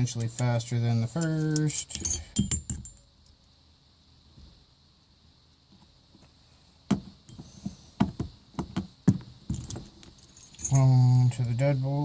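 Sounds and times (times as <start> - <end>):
lock parts and keys clicking: 1.1 - 3.3, 9.5 - 11.0.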